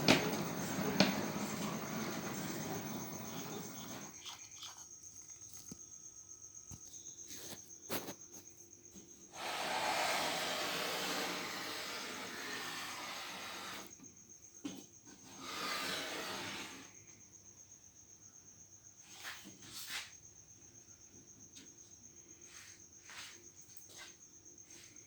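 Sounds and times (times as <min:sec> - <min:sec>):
model train high whine: 0:00.0 - 0:04.3, 0:09.4 - 0:14.0
model train running noise: 0:00.0 - 0:04.3, 0:09.4 - 0:13.9.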